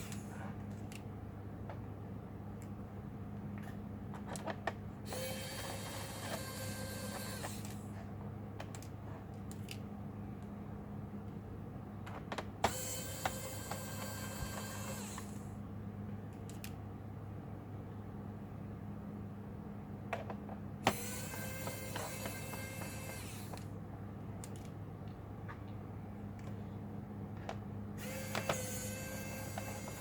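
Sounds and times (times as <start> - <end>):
electric screwdriver whine: 5.1 - 7.8, 12.6 - 15.5, 20.8 - 23.7, 28.0 - 30.0.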